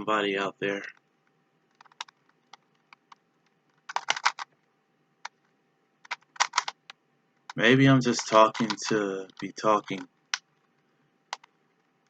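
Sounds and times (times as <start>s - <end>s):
plastic puzzle cube clicks: 1.7s - 4.6s, 6.0s - 10.5s.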